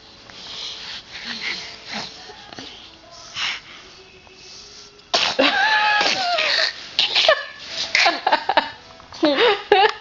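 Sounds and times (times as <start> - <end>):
baby sneezing: 5.1 - 7.4.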